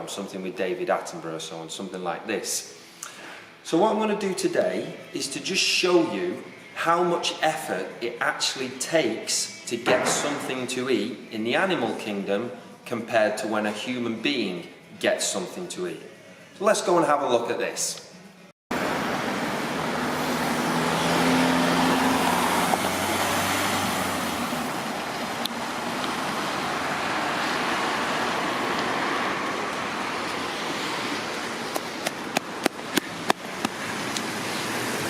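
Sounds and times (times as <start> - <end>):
road traffic noise: 18.7 - 35.0.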